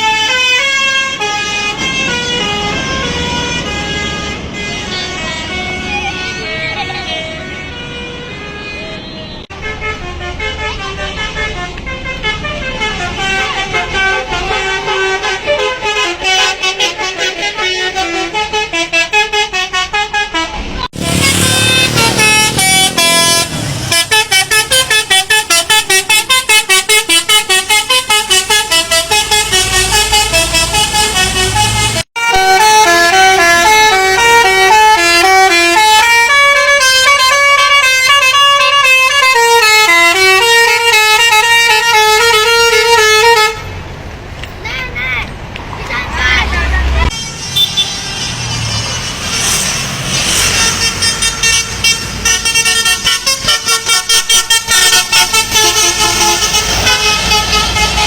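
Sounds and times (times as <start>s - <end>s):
multi-tone bus horn melody: 0.0s - 43.9s, 46.3s - 58.0s.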